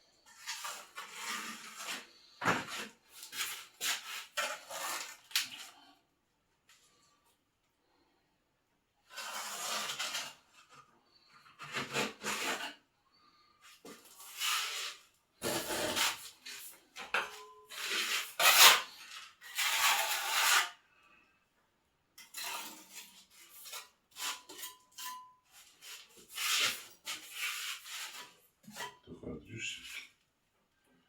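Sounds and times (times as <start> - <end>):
rasp scraping a hard surface: 0.2 - 5.7, 9.1 - 12.9, 13.6 - 20.8, 22.2 - 29.0.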